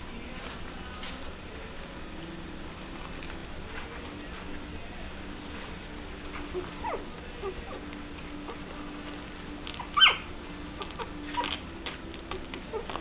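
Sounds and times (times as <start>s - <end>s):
faint steady hum: 0.0s - 13.0s
puppies whimpering and squeaking: 6.2s - 13.0s.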